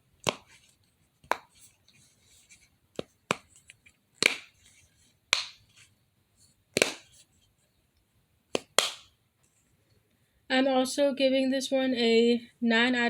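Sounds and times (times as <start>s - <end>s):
pop-it toy bubbles popping: 8.6s - 9.0s.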